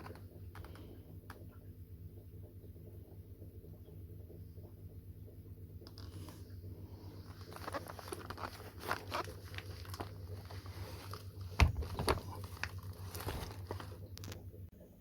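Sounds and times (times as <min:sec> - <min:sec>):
steady low hum: 0:00.0 - 0:15.0
rustling and clicking handling: 0:07.2 - 0:14.5.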